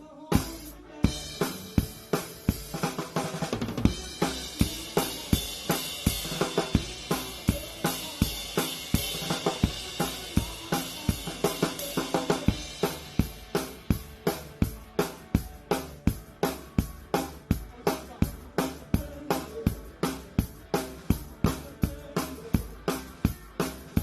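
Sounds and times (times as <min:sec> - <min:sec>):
cymbals and hi-hat: 0:00.3 - 0:24.0
bass drum and snare strikes: 0:00.4 - 0:17.7
live band music: 0:00.4 - 0:24.0.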